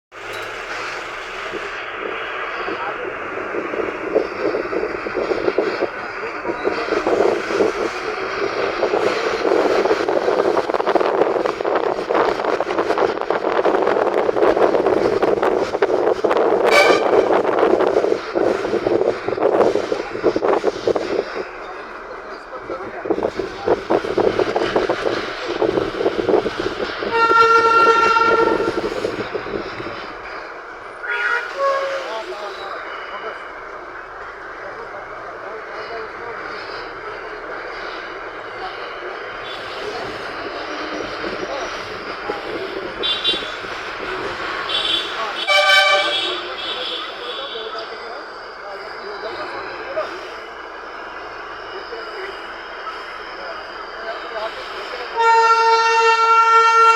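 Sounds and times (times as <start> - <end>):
train clattering: 0.1 - 56.9
train horn blast: 16.6 - 17.6, 27.0 - 28.9, 31.0 - 32.1, 44.7 - 47.6, 55.1 - 56.9.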